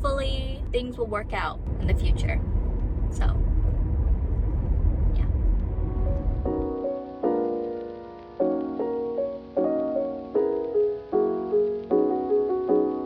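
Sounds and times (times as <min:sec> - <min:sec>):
low car rumble: 0:00.0 - 0:10.6
soft piano chords: 0:05.2 - 0:13.0.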